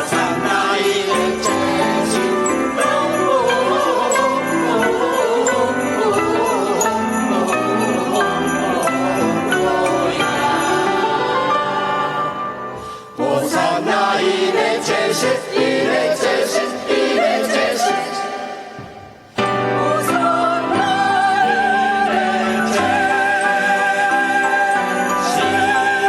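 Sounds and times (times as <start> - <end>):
sleigh bells jingling: 0.0 - 11.8, 21.4 - 26.0
choir singing with instruments: 0.0 - 26.0.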